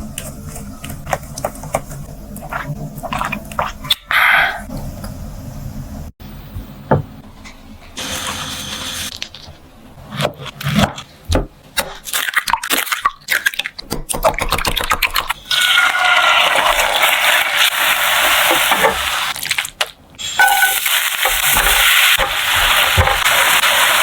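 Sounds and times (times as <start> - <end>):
food sizzling in hot pan: 15.5 - 19.4, 20.2 - 24.0.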